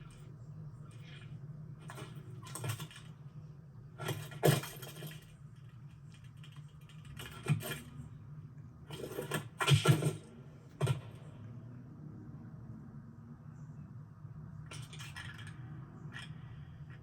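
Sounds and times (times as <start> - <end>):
dry clicking and clattering: 0.9 - 3.4, 4.0 - 8.1, 8.9 - 11.2.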